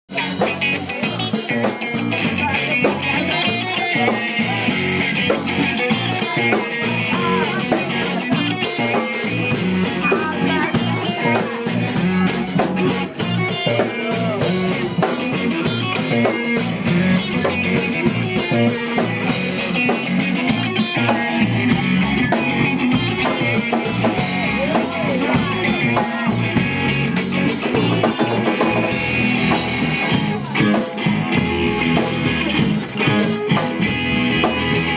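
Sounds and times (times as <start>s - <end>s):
drum kit: 0.1s - 34.9s
electric guitar: 0.1s - 34.9s.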